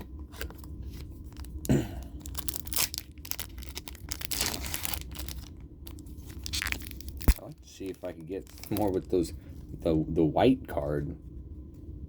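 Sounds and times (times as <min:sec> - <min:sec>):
foil wrapper tearing and crinkling: 0:00.4 - 0:09.3.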